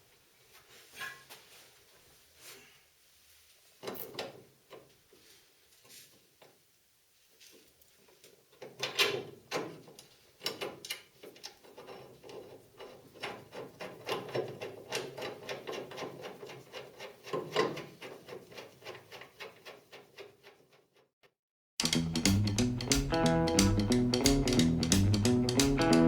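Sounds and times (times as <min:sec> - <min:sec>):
handling knocks and rattles: 0:21.8 - 0:26.0.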